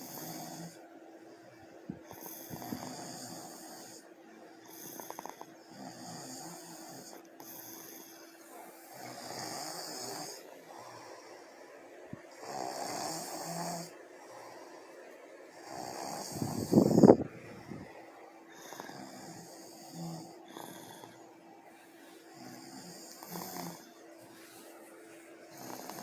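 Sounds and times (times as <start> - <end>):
people snoring: 0.0 - 0.8, 2.1 - 4.1, 4.7 - 8.3, 8.9 - 11.5, 12.3 - 14.8, 15.5 - 17.8, 18.5 - 21.2, 22.4 - 24.0, 25.5 - 26.0.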